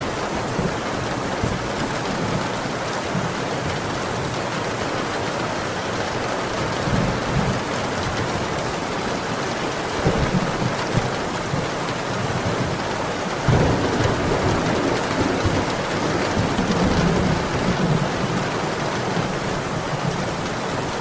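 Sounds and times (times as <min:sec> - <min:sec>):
heavy rain pouring: 0:00.0 - 0:21.0
low rumbles of thunder: 0:13.4 - 0:20.5.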